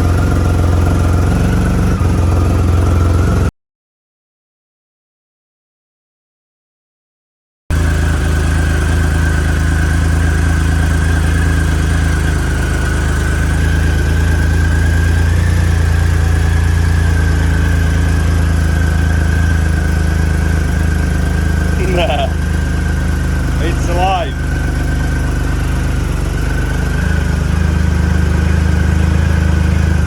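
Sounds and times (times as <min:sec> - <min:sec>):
motorcycle engine idling: 0:00.0 - 0:03.5, 0:07.7 - 0:30.0
steady high whine: 0:07.8 - 0:30.0.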